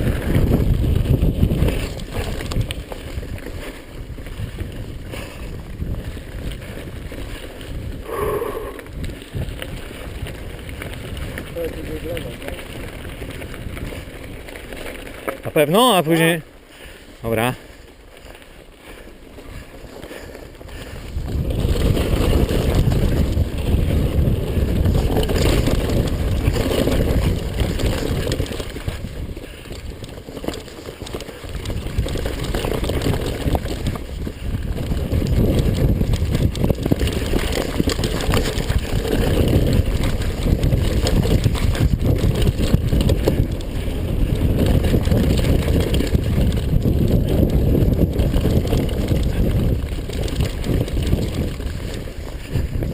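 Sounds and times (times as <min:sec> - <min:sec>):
wind buffeting microphone: 0:00.0 - 0:15.8, 0:16.7 - 0:52.9
mountain bike rumble and rattle: 0:00.0 - 0:52.9.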